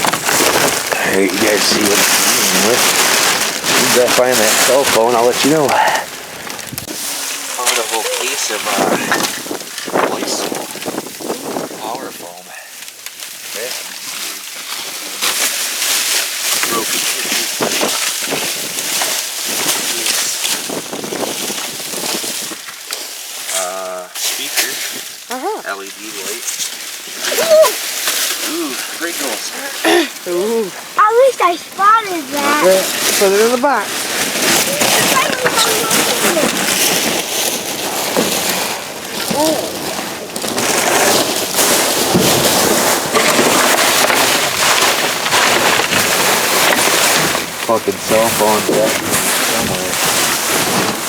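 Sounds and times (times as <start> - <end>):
wind buffeting microphone: 0.0 - 12.2, 16.7 - 22.7, 29.8 - 51.0
trash rustling and knocking: 0.0 - 12.4, 26.6 - 51.0.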